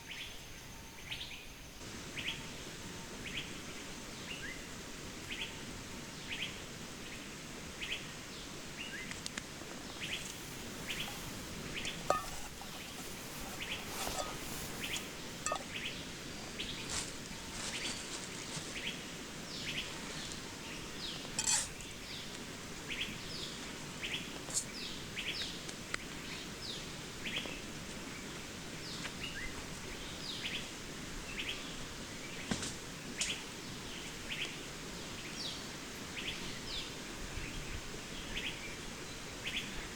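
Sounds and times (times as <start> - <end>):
small birds chirping: 7.8 - 27.6.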